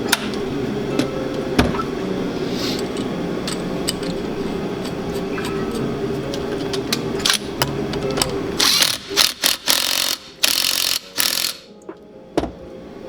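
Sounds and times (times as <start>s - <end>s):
mechanical hum: 0.0s - 13.0s
ratchet wrench rasping: 8.6s - 11.7s.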